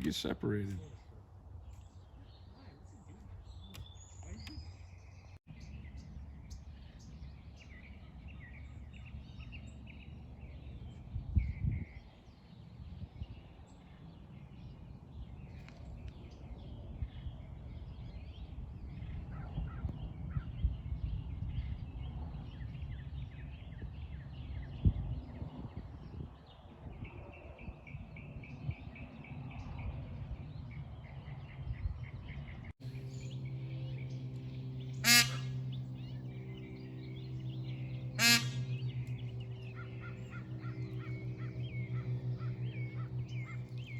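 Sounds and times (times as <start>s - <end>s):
small birds chirping: 0.0s - 43.9s
steady low rumble: 29.6s - 43.9s
low hum with several tones: 32.8s - 43.9s.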